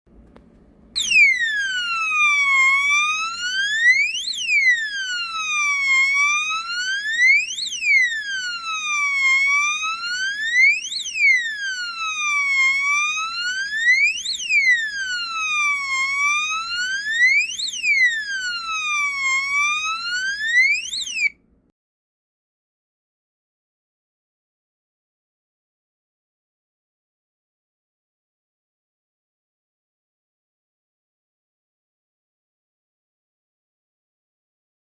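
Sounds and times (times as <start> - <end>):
electronic alarm siren wailing: 1.0 - 21.4.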